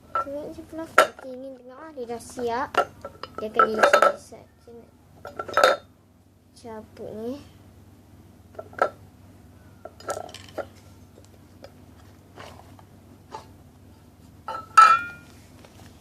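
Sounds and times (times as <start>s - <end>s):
loud ringing clink: 14.5s - 15.3s.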